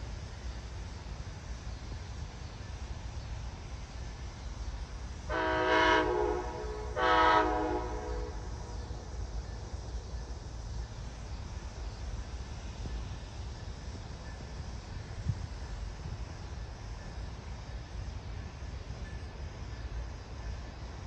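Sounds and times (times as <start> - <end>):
locomotive horn blasts: 5.3 - 8.5.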